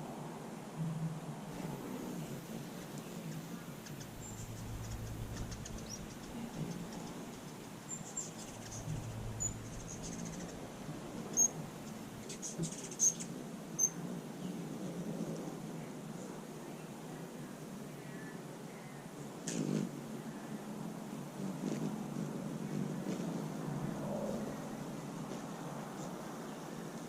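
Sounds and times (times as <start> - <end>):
low hum: 0.8 - 13.0
hummingbirds chittering: 1.5 - 15.0.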